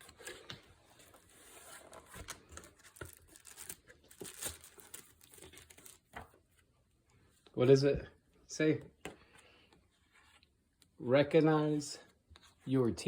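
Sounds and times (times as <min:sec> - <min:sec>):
cardboard box crinkling: 0:00.0 - 0:06.4.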